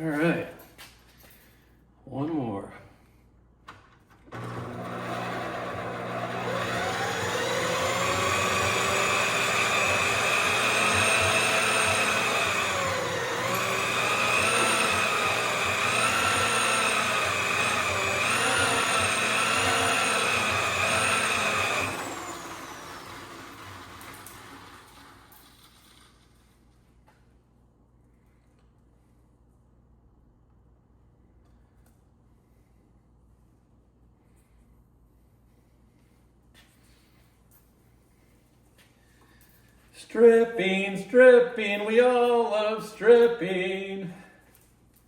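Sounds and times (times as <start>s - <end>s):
wire-stripping machine motor whine: 4.4s - 25.3s.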